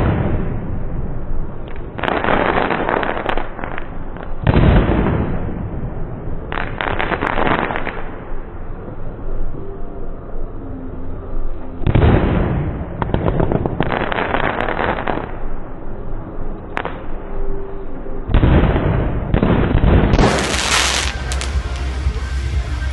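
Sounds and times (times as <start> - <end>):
fireworks crackling pops: 0.0 - 0.6, 1.6 - 5.6, 6.4 - 8.5, 11.9 - 15.6, 18.3 - 22.9
firework sharp bang: 4.4 - 5.9, 18.3 - 22.7.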